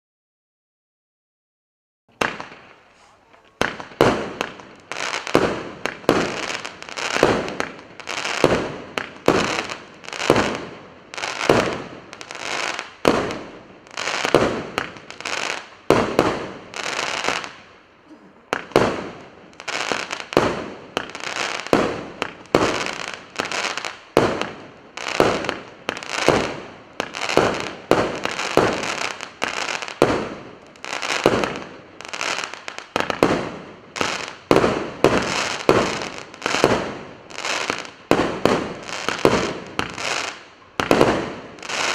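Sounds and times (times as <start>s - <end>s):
firework cake shots firing: 37.6s - 41.9s.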